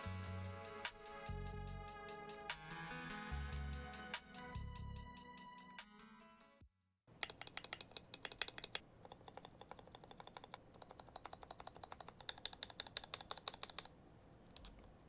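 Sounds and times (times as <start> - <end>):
mechanical keyboard typing: 7.1 - 14.9.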